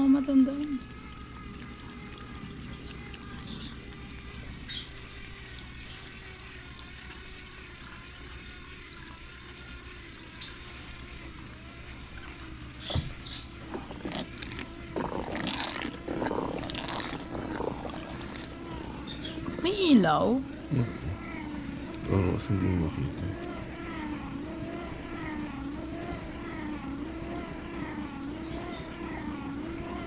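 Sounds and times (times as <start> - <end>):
washing machine motor hum: 0.0 - 30.0
water trickling: 0.0 - 30.0.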